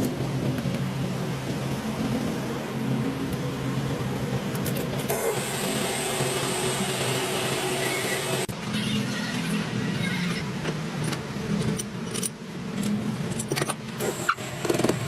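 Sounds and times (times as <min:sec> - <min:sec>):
machine hum: 0:05.1 - 0:08.5, 0:14.0 - 0:15.0.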